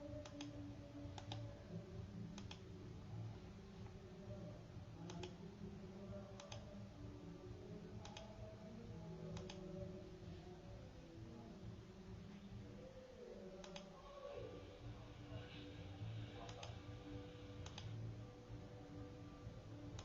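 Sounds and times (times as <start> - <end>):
low steady hum: 0.0 - 20.0
faint sharp clicks: 1.2 - 1.5, 2.3 - 2.6, 5.1 - 5.4, 6.4 - 6.7, 8.0 - 8.3, 9.4 - 9.7, 13.6 - 13.9, 17.6 - 18.0.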